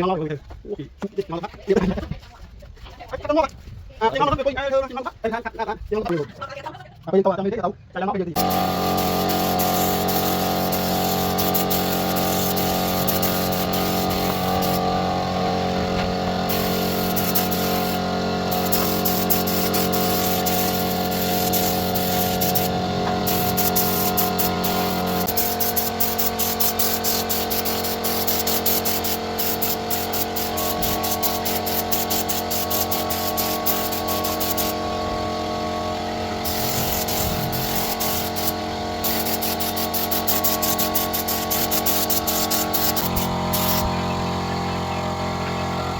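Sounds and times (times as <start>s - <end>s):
woodworking machine motor humming: 8.4s - 45.9s.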